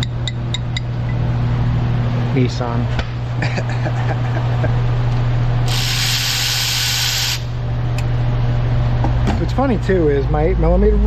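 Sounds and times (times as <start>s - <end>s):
steady low hum: 0.0s - 11.0s
loud hiss of spray: 5.7s - 7.5s.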